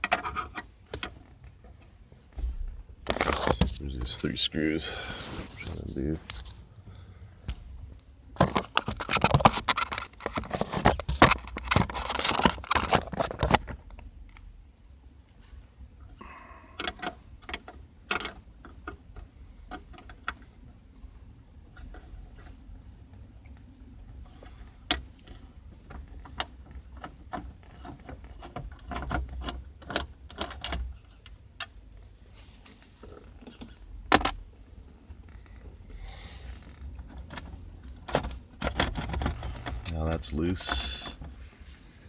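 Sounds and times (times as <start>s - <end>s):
low steady rumble: 0.6s - 9.0s.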